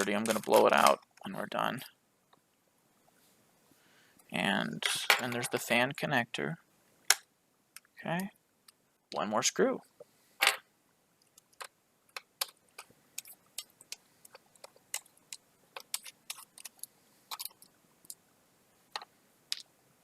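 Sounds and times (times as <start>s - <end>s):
handling small metal parts: 10.4s - 18.2s.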